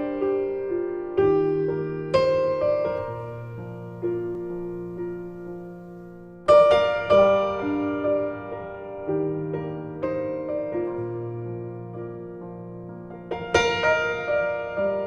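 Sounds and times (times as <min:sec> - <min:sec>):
gentle piano chords: 0:00.0 - 0:15.0.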